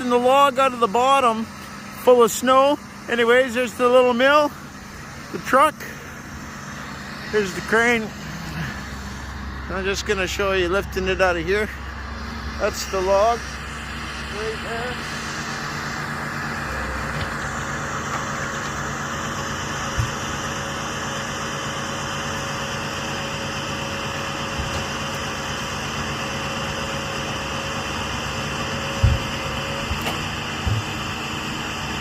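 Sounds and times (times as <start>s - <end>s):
thin steady whine: 0.0s - 32.0s
truck engine running: 0.0s - 32.0s
low knocks: 29.0s - 31.0s.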